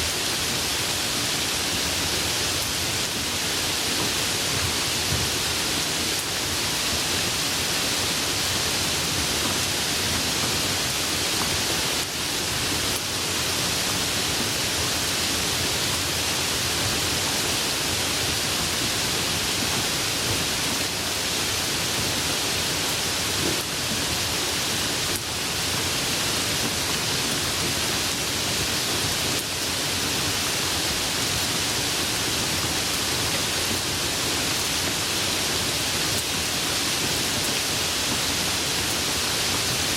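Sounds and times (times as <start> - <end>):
light rain falling: 0.0 - 39.9.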